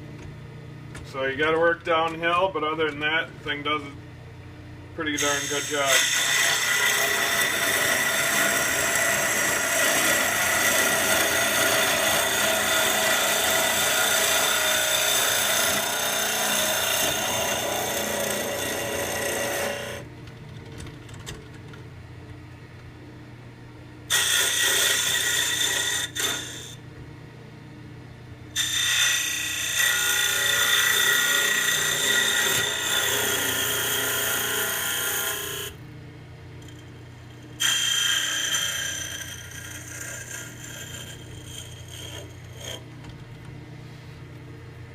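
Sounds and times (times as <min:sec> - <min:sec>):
lathe cutter rasping wood: 0:05.1 - 0:20.1, 0:24.1 - 0:26.8, 0:28.6 - 0:35.8, 0:37.6 - 0:42.9
lathe motor hum: 0:05.1 - 0:20.1, 0:24.1 - 0:26.8, 0:28.6 - 0:35.8, 0:36.6 - 0:44.0.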